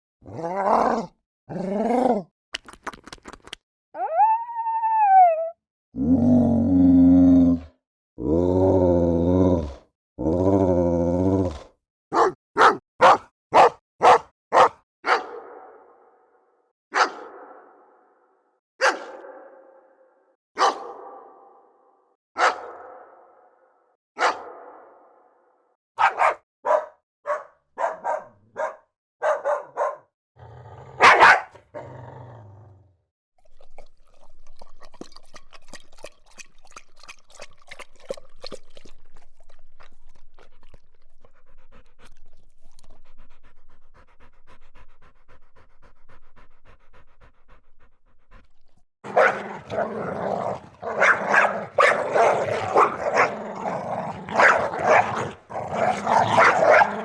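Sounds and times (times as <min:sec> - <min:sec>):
dog barking: 0:12.1 - 0:18.1, 0:18.8 - 0:23.6, 0:24.2 - 0:30.1, 0:30.9 - 0:31.9, 0:49.0 - 0:50.0, 0:50.6 - 0:53.6, 0:54.2 - 0:57.0.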